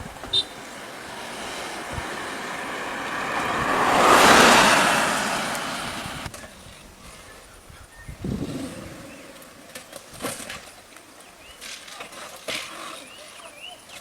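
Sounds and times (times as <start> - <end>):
vehicle passing close by: 0.0 - 6.4.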